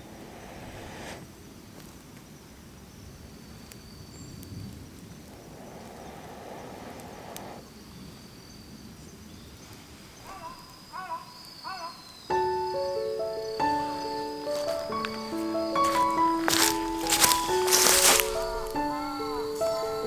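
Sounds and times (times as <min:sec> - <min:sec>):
wood bonfire burning with hiss: 0:00.0 - 0:20.0
fire crackles and pops: 0:00.1 - 0:07.8, 0:12.8 - 0:18.9
short chirping calls: 0:10.2 - 0:20.0.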